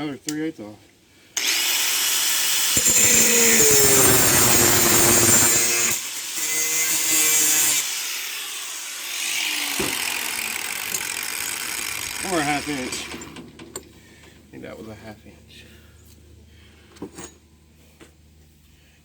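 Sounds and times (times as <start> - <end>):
power tool cutting metal pipe: 1.4 - 13.4.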